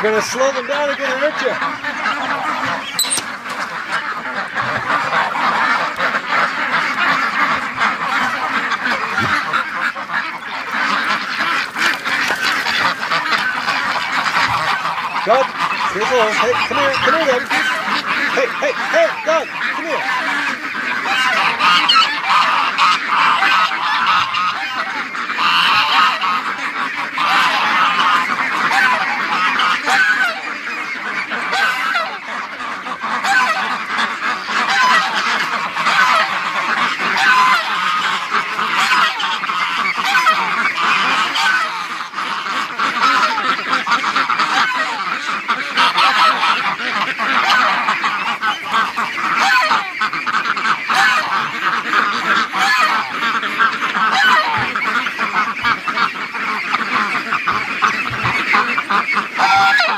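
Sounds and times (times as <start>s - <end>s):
ducks and geese calling: 0.0s - 59.9s.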